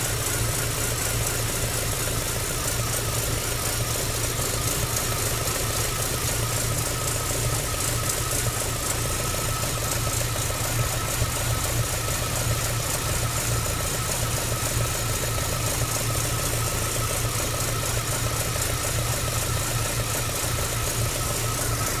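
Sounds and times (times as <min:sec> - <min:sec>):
car engine idling: 0:00.0 - 0:22.0
fast even engine ticking: 0:00.0 - 0:22.0
thin steady engine whine: 0:00.0 - 0:22.0.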